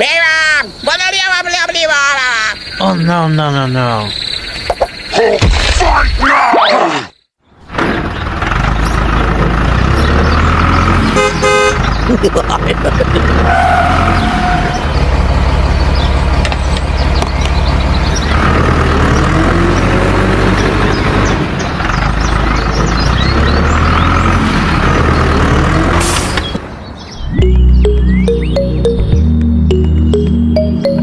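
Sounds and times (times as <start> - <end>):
heavy vehicle engine running: 7.5 - 26.8.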